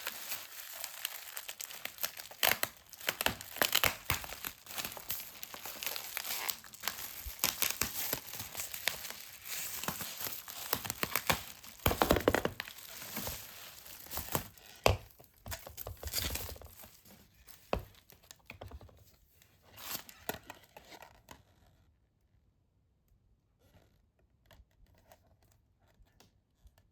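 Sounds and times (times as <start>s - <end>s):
packaging crinkling and tearing: 0.0s - 18.3s, 19.8s - 20.5s.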